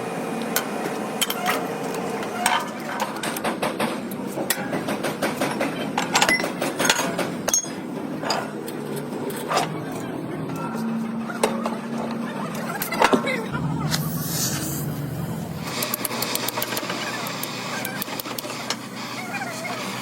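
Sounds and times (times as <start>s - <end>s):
metal tools clinking and knocking: 6.0s - 8.4s.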